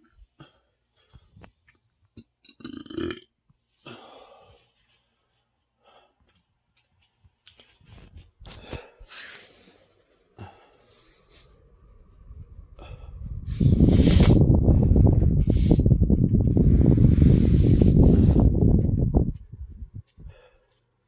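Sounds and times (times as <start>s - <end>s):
deep burps: 2.2s - 3.4s.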